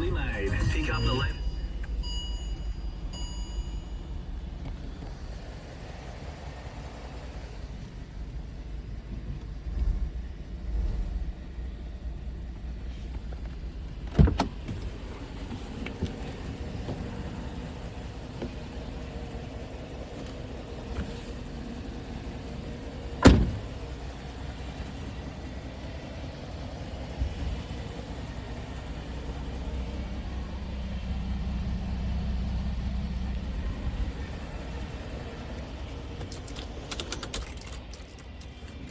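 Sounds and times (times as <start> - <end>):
car engine idling: 0.0 - 38.9
sharp engine knocks: 20.1 - 24.2.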